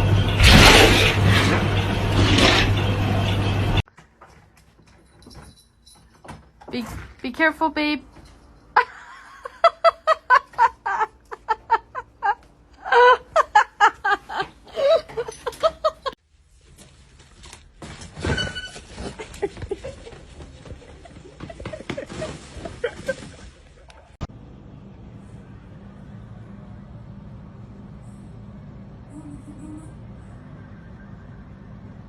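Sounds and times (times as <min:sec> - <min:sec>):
person laughing hard: 0:08.8 - 0:16.2, 0:19.0 - 0:23.6.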